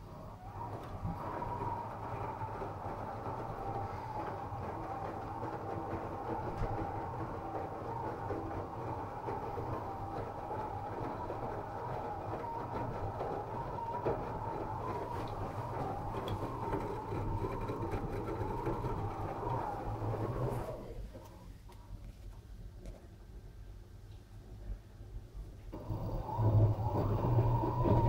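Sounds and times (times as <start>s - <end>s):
washing machine rumbling: 0.0s - 21.6s, 25.7s - 28.0s
wavering whine: 25.8s - 28.0s.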